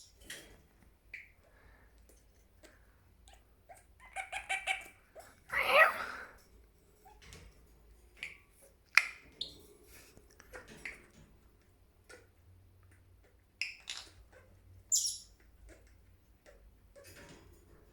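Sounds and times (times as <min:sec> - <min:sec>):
parrot clicking and squawking: 0:02.6 - 0:06.1, 0:12.0 - 0:17.1.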